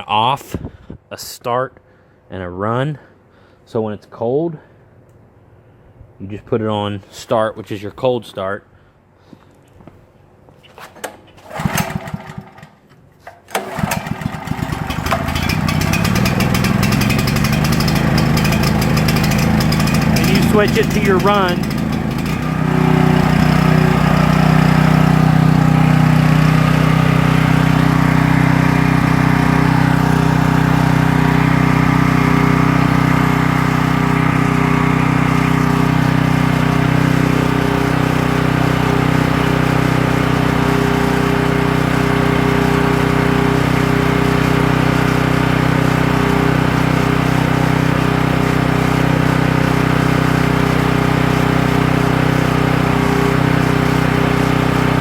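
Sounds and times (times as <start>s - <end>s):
generator engine droning: 11.4s - 12.7s, 13.3s - 55.0s.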